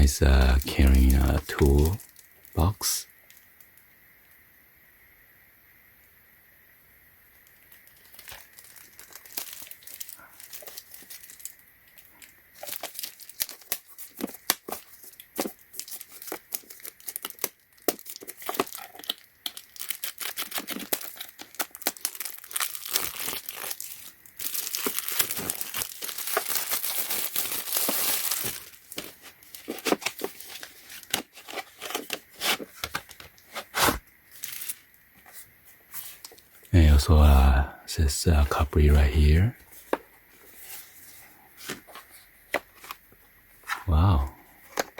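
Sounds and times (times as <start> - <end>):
packaging crinkling: 7.5 - 36.7
packaging tearing: 7.8 - 11.5, 12.6 - 34.8.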